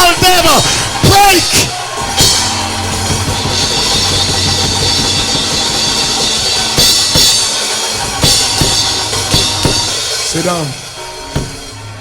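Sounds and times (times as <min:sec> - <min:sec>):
live band music: 0:00.0 - 0:12.0
hard drum hits: 0:01.0 - 0:12.0
cymbal crashes: 0:01.9 - 0:12.0.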